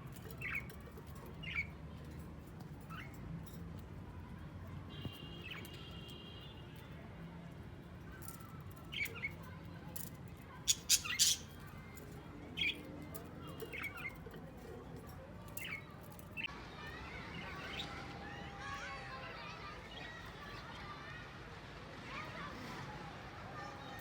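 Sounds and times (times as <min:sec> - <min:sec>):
parakeets squawking harshly: 0:10.7 - 0:11.6.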